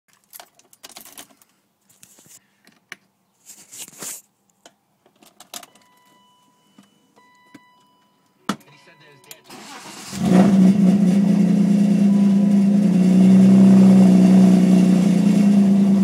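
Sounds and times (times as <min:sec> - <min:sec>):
handling rattles: 0:00.1 - 0:02.9
faint steady high tone: 0:05.7 - 0:09.5.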